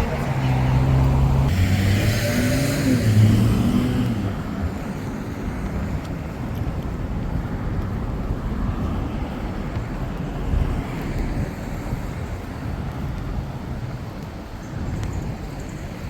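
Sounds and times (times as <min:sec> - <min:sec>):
car engine: 0:00.0 - 0:05.4
road noise: 0:00.0 - 0:16.0.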